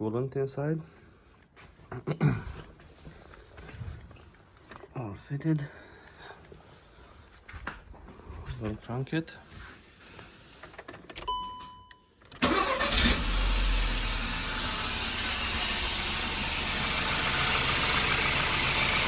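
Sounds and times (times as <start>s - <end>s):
short beep: 11.3s - 12.1s
car engine cranking and idling: 12.3s - 19.0s.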